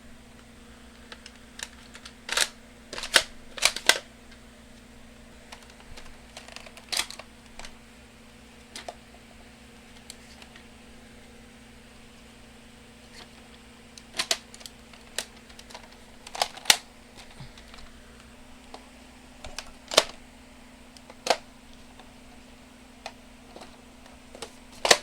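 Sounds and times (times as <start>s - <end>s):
plastic toy blaster clicks: 1.6s - 4.0s, 14.2s - 15.8s.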